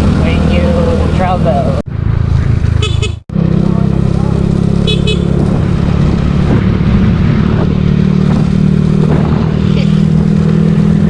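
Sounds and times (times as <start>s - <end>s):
road and wind noise: 0.0s - 11.0s
scooter engine running: 2.7s - 6.4s.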